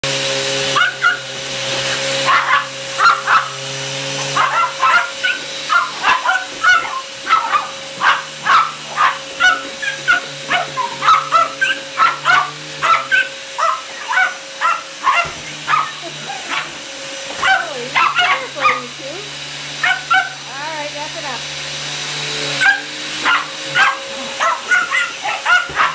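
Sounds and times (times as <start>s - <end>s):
vacuum cleaner motor hum: 0.0s - 25.9s
dog barking: 0.8s - 1.3s, 2.2s - 3.6s, 4.3s - 16.8s, 17.4s - 18.9s, 19.8s - 20.4s, 22.6s - 25.9s.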